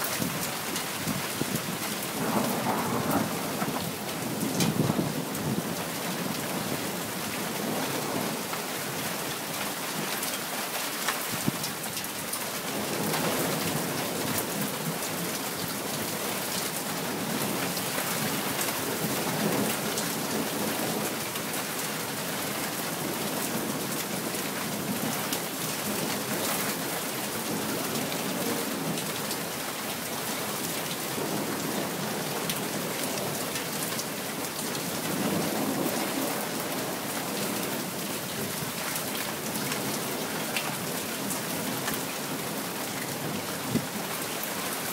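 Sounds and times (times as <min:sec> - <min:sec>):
rain pouring: 0:00.0 - 0:44.9
thunder rumbling: 0:01.0 - 0:05.8.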